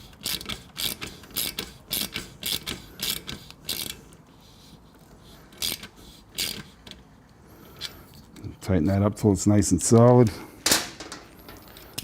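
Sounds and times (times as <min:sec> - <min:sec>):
ratchet wrench ratcheting: 0:00.0 - 0:04.0, 0:05.5 - 0:07.0.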